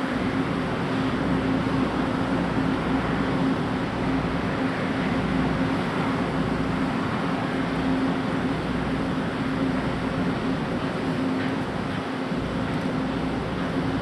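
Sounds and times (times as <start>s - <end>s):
constant rushing noise: 0.0s - 14.0s
engine hum: 0.0s - 14.0s.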